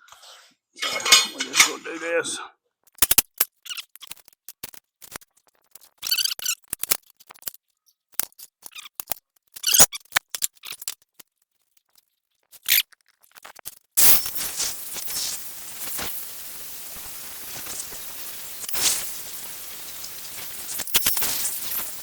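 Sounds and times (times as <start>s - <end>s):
metal and tools clinking: 0.8s - 1.8s.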